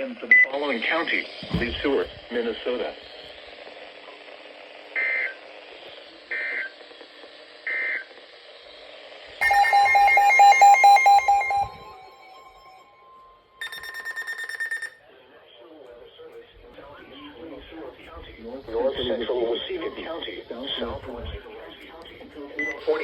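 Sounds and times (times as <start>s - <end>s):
short digital data bursts: 9.4s - 13.0s, 13.6s - 15.0s
steady electronic tone: 9.4s - 14.9s
fast-pulsing electronic alert beep: 9.4s - 15.0s
high pulsing beep: 9.4s - 15.0s.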